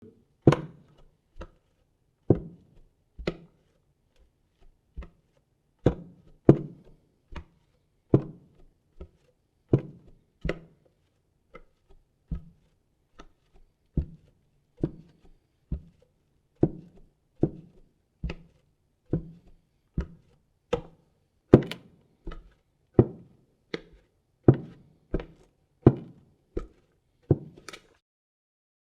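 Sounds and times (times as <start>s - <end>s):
bare footsteps on wooden floor: 2.3s - 3.4s, 5.0s - 11.0s, 13.4s - 22.4s, 23.0s - 27.7s.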